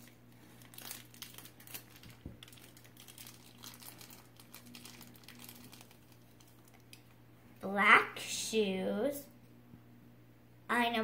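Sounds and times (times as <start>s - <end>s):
plastic wrapper crinkling: 0.0s - 7.2s.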